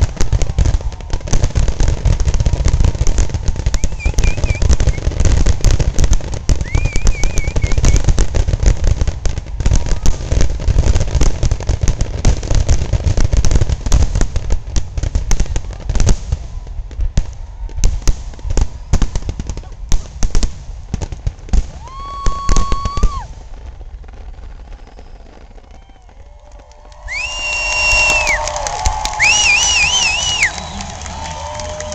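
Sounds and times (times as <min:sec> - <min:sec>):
fireworks booms and crackling bangs: 0:00.0 - 0:31.9
warbling firework whistle: 0:01.9 - 0:05.5, 0:06.5 - 0:08.2, 0:27.0 - 0:31.9.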